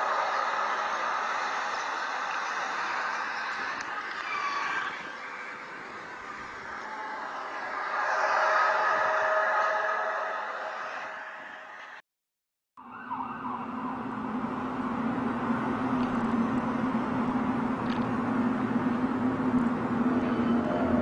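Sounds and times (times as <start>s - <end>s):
low droning hum: 13.8s - 21.0s.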